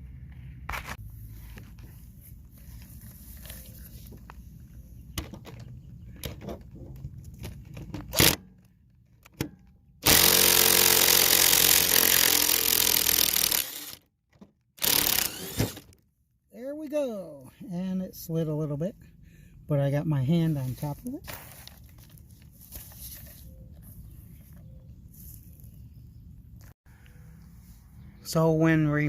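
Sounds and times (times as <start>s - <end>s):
handling noises: 0.6s - 9.9s, 20.8s - 25.8s
power drill spinning: 10.0s - 14.0s, 14.8s - 16.0s.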